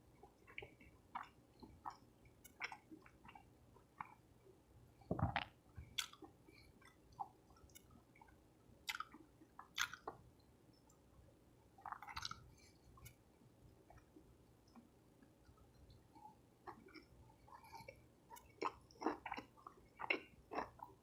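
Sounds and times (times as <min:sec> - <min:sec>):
person chewing: 0:00.3 - 0:04.2, 0:05.2 - 0:10.2, 0:11.8 - 0:13.2, 0:16.6 - 0:21.0.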